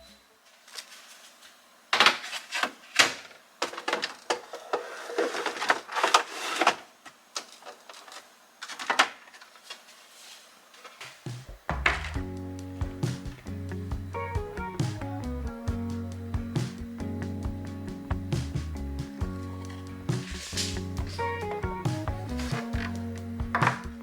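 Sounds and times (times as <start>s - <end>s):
packaging rustling: 19.6s - 21.5s.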